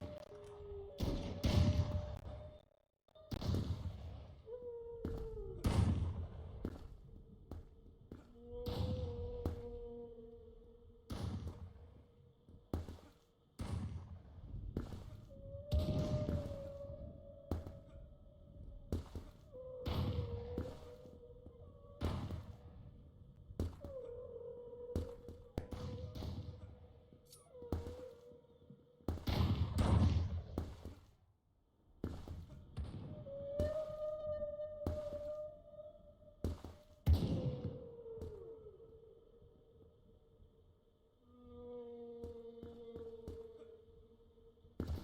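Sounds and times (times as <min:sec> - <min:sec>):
wavering whale-like moan: 0:04.5 - 0:06.5, 0:08.2 - 0:11.1, 0:15.3 - 0:29.0, 0:32.9 - 0:36.5, 0:37.2 - 0:44.8.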